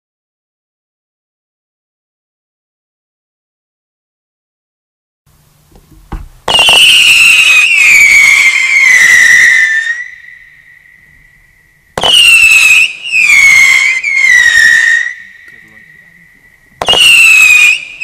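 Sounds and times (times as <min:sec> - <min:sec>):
whistling firework: 0:06.4 - 0:18.0.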